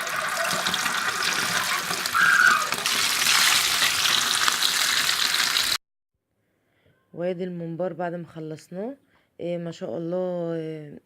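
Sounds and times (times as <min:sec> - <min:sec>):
sausages sizzling in hot oil: 0:00.0 - 0:05.8.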